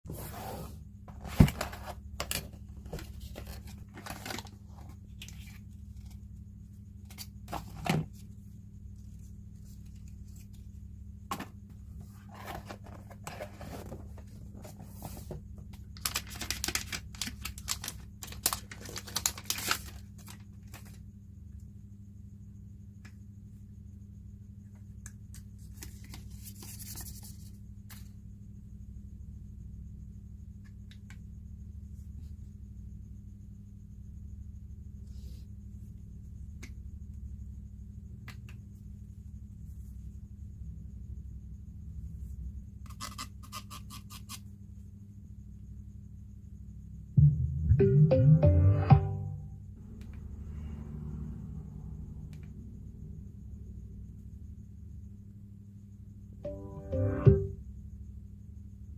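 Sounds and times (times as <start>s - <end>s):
cardboard and plastic tearing: 3.4s - 4.6s, 16.0s - 20.8s
steady low hum: 44.5s - 58.9s.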